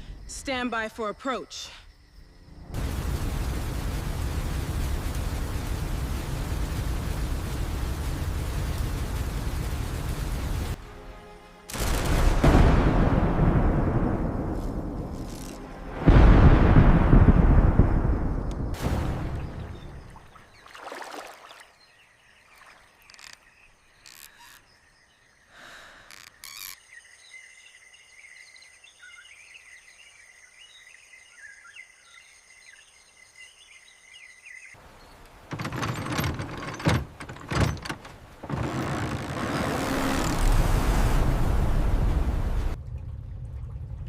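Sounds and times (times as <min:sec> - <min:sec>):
birds chirping: 0:29.0 - 0:40.4.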